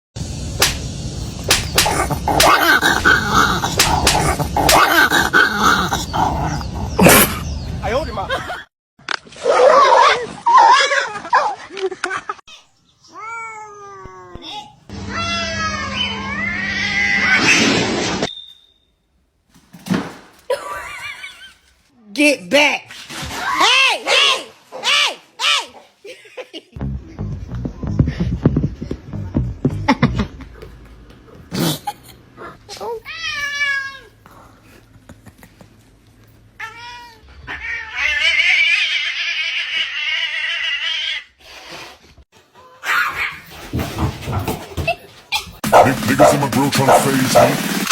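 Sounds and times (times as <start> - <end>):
cat yowling: 15.1 - 17.5, 36.6 - 41.3.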